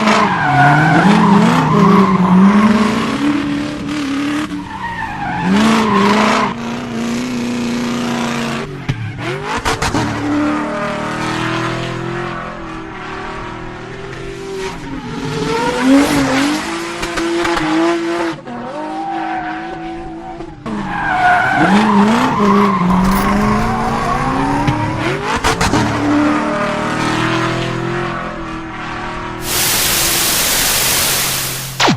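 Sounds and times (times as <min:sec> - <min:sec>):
tyres squealing and skidding: 0:00.0 - 0:03.2, 0:04.2 - 0:06.6, 0:18.7 - 0:29.1
car engine revving: 0:21.4 - 0:31.8.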